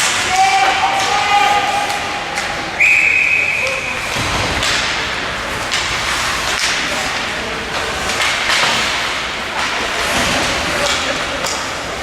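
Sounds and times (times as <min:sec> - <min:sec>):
skate blades scraping ice: 0:03.9 - 0:11.5.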